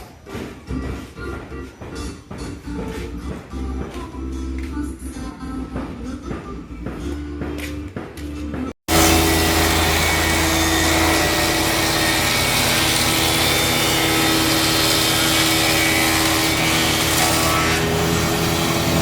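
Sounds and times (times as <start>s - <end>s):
music: 0.1s - 8.8s
planer running: 8.9s - 19.0s.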